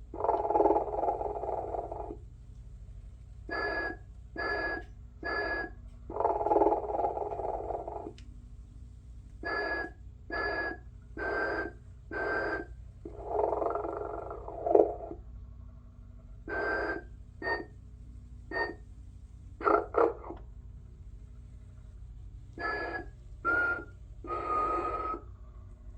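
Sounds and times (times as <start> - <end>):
steady low hum: 0.0 - 25.9
toy snoring and whistling: 3.5 - 8.1, 9.4 - 15.2, 16.5 - 17.7, 18.5 - 18.8, 19.6 - 20.3, 22.6 - 25.3.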